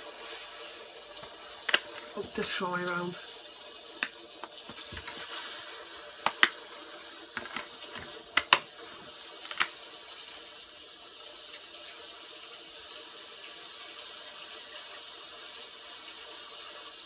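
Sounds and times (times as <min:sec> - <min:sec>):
rain hiss: 0:00.0 - 0:17.0
plastic dvd case clicks: 0:01.6 - 0:02.2, 0:04.4 - 0:05.2, 0:06.3 - 0:06.6, 0:07.4 - 0:08.7, 0:09.5 - 0:09.7.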